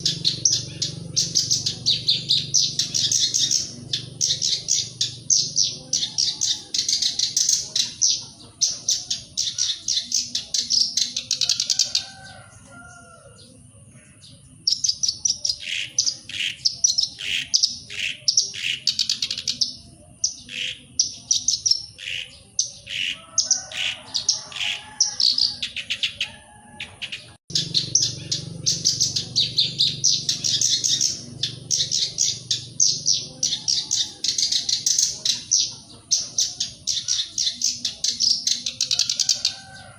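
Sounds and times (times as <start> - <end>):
bird rapid high chirping: 0.0 - 11.9, 14.3 - 39.8.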